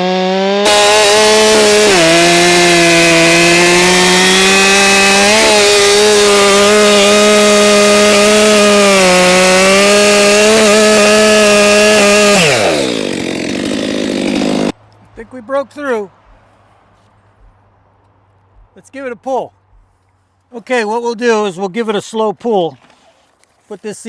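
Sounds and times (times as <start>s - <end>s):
chainsaw cutting log: 0.0s - 14.8s.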